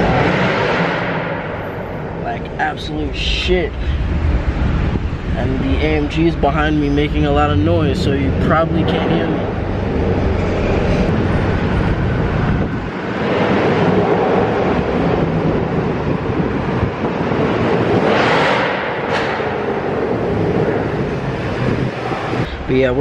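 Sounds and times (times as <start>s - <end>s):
road and wind noise: 0.0s - 23.0s.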